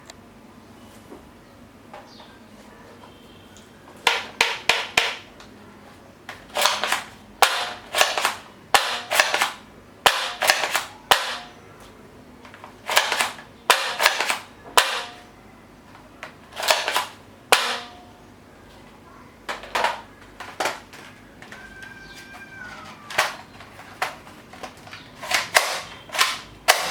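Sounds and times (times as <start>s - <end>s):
toy guns firing: 6.5s - 11.5s, 12.8s - 15.2s, 16.5s - 18.0s, 19.5s - 21.0s, 25.2s - 26.9s.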